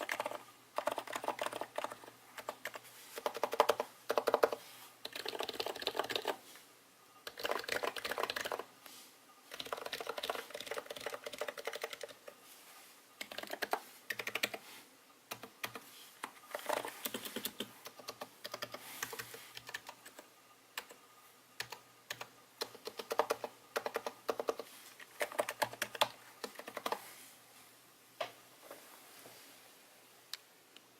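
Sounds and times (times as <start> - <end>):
muted keyboard typing: 0.0 - 6.4, 7.2 - 8.7, 9.5 - 12.4, 13.2 - 14.6, 15.3 - 21.0, 21.6 - 27.0.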